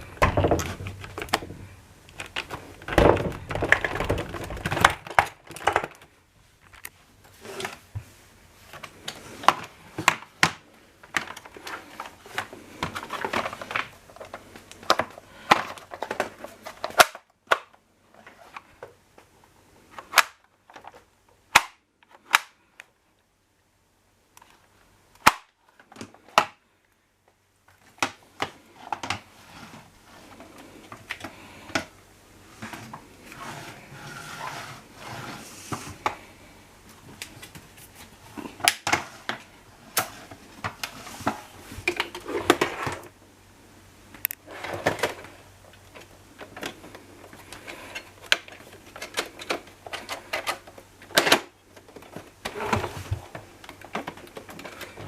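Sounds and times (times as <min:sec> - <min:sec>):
plastic clicks and knocks: 0:00.1 - 0:06.9
rubbing and rustling: 0:27.8 - 0:43.2, 0:51.6 - 0:55.0.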